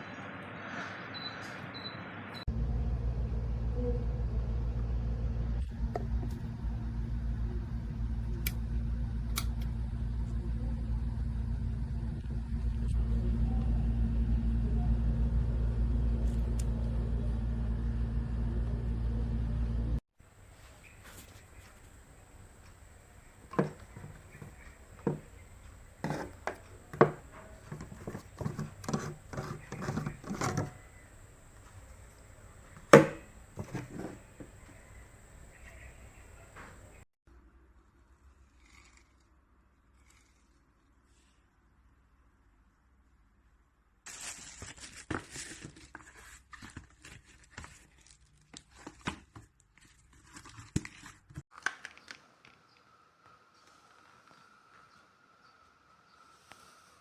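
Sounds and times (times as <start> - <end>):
crinkling and rustling with clicks: 44.1 - 52.9.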